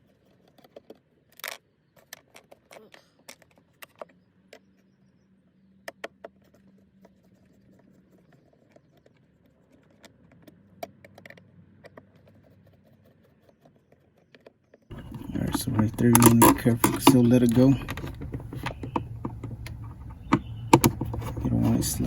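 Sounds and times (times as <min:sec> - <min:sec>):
faint low hum: 0:14.9 - 0:22.0
hand tools clinking on metal bolts: 0:14.9 - 0:22.0
sharp taps: 0:14.9 - 0:22.0.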